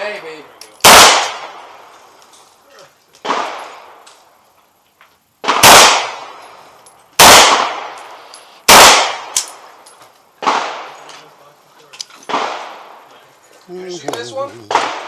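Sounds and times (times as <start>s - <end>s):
gunshots echoing: 0.8s - 1.9s, 3.2s - 4.0s, 5.4s - 6.6s, 7.2s - 9.8s, 10.4s - 11.2s, 12.3s - 13.1s, 14.6s - 15.0s.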